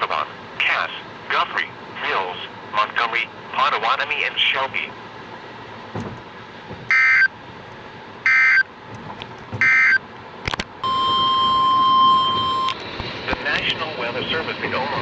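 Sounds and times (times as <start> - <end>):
steady warning alarm tone: 6.9 - 7.3, 8.2 - 8.7, 9.6 - 10.0, 10.8 - 12.8.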